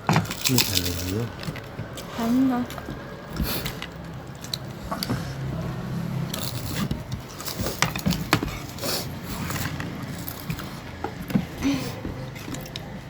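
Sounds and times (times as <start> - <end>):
chewing: 0.0 - 13.0
utensils scraping plates: 0.0 - 13.0.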